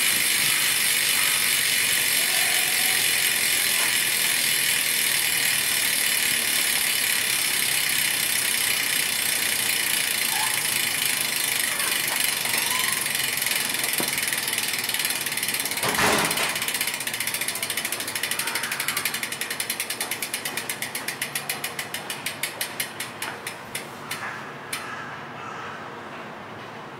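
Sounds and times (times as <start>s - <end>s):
bicycle freehub ratchet clicking: 0.0s - 24.9s.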